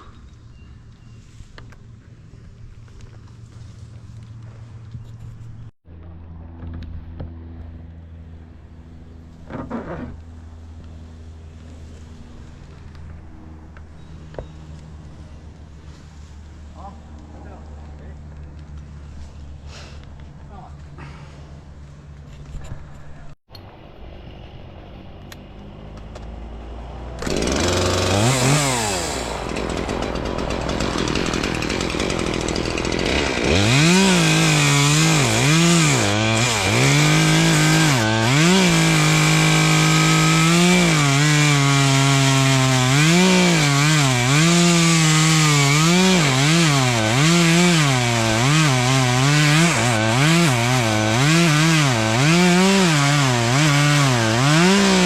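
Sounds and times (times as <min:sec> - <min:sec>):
chainsaw cutting branches: 0:27.0 - 0:55.0.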